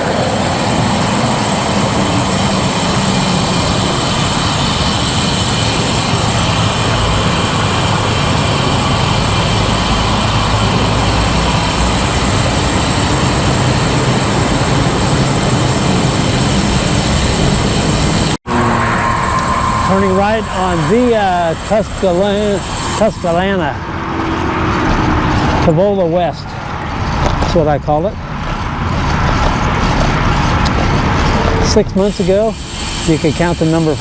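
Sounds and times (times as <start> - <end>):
faint engine hums: 0.0 - 34.0
heavy freeway traffic: 0.0 - 34.0
wind on microphone: 0.0 - 34.0.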